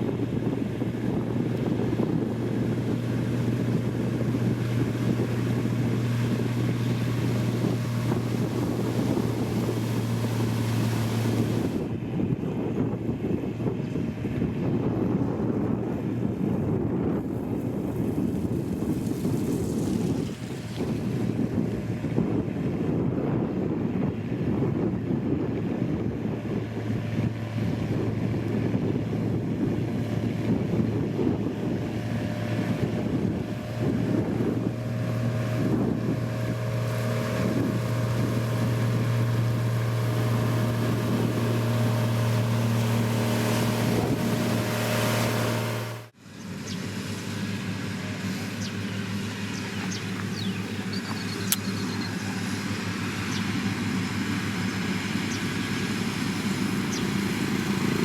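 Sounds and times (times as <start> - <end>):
engine with higher steady note: 0.0 - 58.0
heavy machinery engines running: 21.4 - 58.0.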